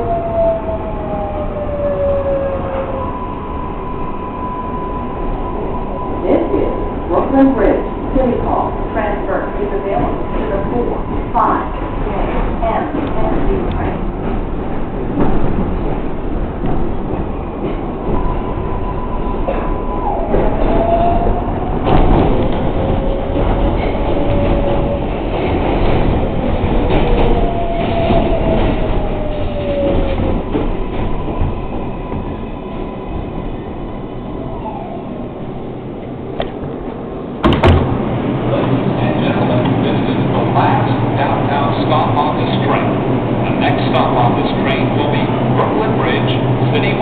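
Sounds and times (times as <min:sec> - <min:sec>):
subway train rumbling in tunnel: 0:00.0 - 0:47.0
sharp knock: 0:37.4 - 0:37.9.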